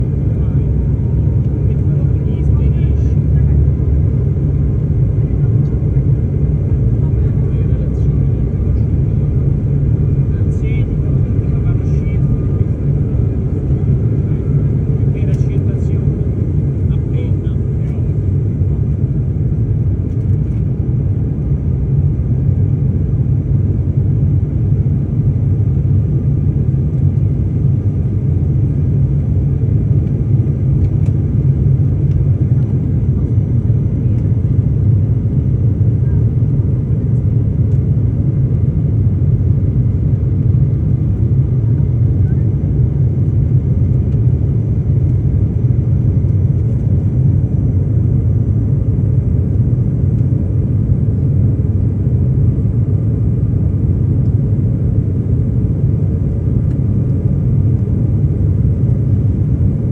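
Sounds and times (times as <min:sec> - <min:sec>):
jet engines rumbling: 0:00.0 - 0:59.9.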